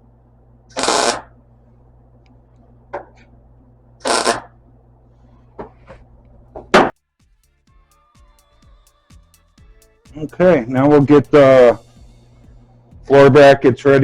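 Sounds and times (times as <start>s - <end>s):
steady low hum: 0.0s - 14.0s
welder crackling bursts: 0.7s - 1.4s, 4.0s - 4.6s, 6.3s - 14.0s.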